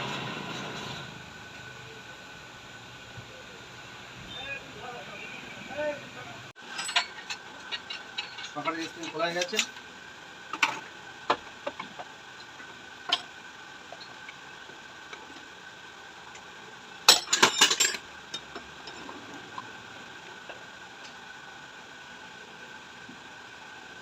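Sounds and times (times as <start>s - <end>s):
metal tools clinking: 6.6s - 9.8s, 17.1s - 19.2s.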